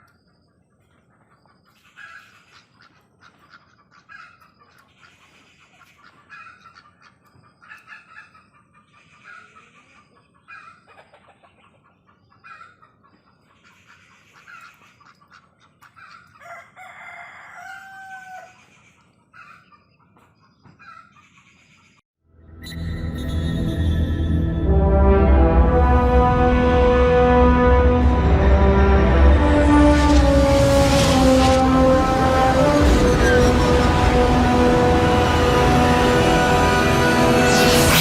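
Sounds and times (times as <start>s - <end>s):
chickens clucking: 0.1s - 17.0s
rooster crowing: 16.4s - 18.7s.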